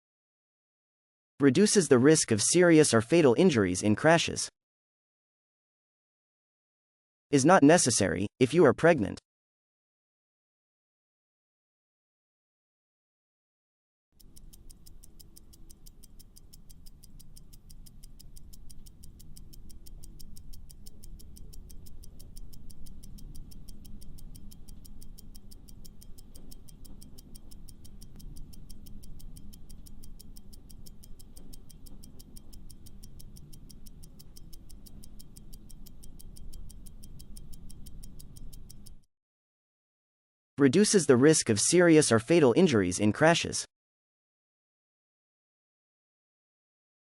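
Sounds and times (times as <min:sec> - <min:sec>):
fast clock-like ticking: 0:14.2 - 0:39.1.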